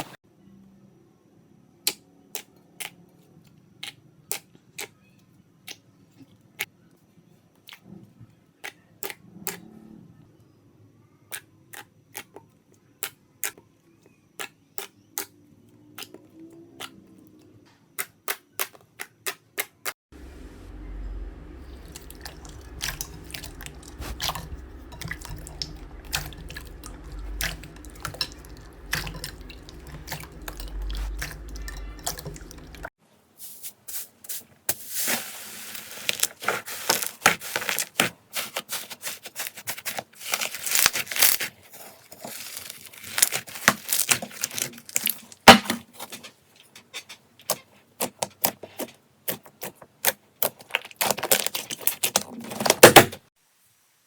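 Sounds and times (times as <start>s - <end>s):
low background hum: 20.1s - 32.9s
slime crackling and squelching: 21.6s - 32.9s, 35.0s - 45.5s, 47.5s - 52.8s.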